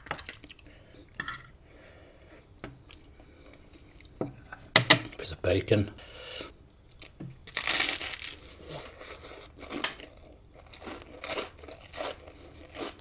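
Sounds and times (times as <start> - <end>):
chewing food close up: 6.9 - 13.0.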